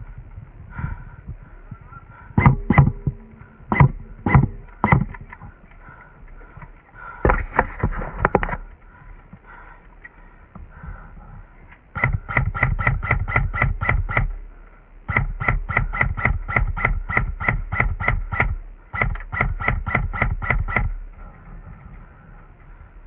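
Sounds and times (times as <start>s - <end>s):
airsoft gun firing full auto: 2.4s - 5.3s, 11.9s - 14.4s, 15.1s - 21.0s.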